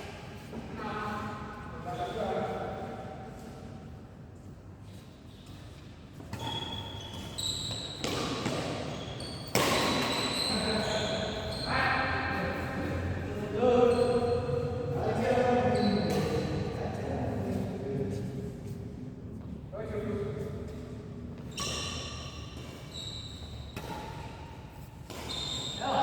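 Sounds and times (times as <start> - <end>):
shoe squeaks: 5.3 - 16.7, 21.4 - 24.2, 25.1 - 26.0
racket hitting shuttlecock: 8.0 - 8.9, 9.5 - 10.3, 23.5 - 24.4, 25.0 - 26.0.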